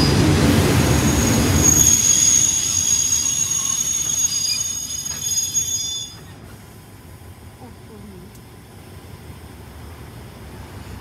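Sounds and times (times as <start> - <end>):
train wheels squealing: 0.0 - 6.6
train rumble: 0.0 - 11.0.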